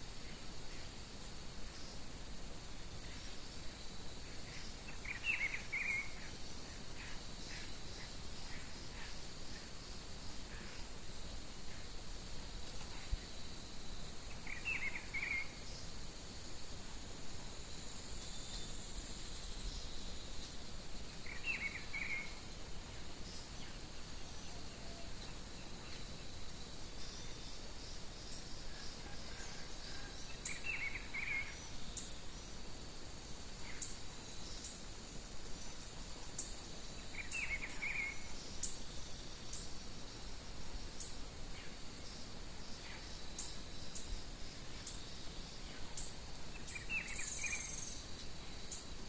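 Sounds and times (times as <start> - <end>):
background hiss: 0.0 - 49.0
faint insect drone: 0.0 - 49.0
quiet bird chirps: 0.0 - 49.0
songbird warbling: 4.4 - 6.4, 14.3 - 15.6, 21.2 - 22.4, 37.1 - 38.8, 46.0 - 48.1.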